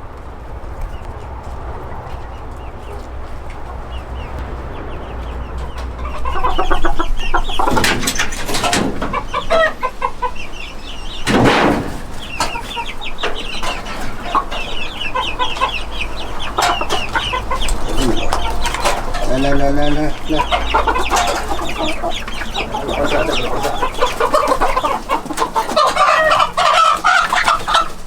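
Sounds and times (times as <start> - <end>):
chickens clucking: 0.2 - 28.0
chickens squawking harshly: 5.8 - 28.0.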